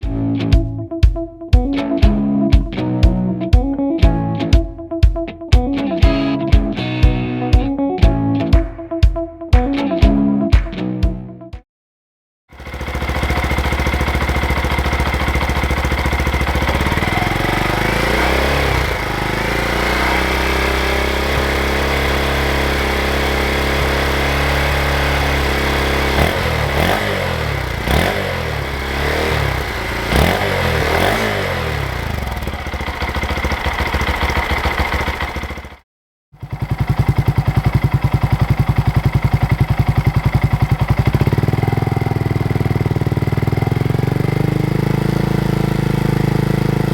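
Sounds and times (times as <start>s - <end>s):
motorcycle engine idling and revving: 12.5s - 35.8s, 36.4s - 46.9s.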